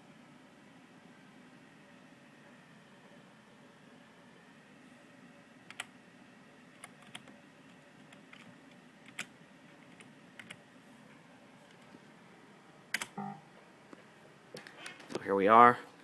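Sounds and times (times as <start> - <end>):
low room hiss: 0.0 - 16.0.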